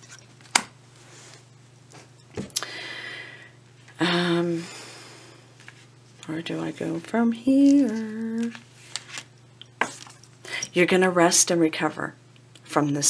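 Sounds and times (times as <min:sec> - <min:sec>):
woman humming: 0:04.0 - 0:05.2, 0:07.2 - 0:08.6.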